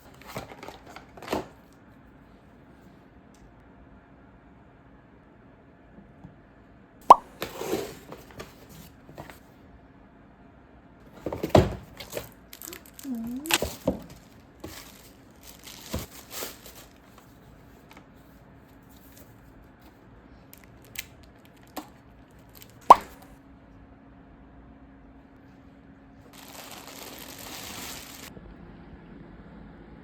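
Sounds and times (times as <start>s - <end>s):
packaging crinkling and tearing: 12.0s - 17.2s, 20.6s - 22.8s, 26.3s - 28.3s.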